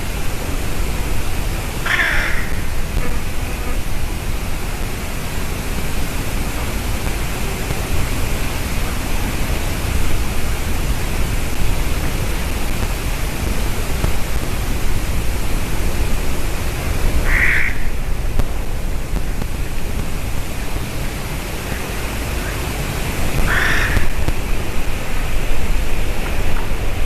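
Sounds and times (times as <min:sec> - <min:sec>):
loud rushing noise: 0:00.0 - 0:27.0
bird call: 0:17.2 - 0:18.0.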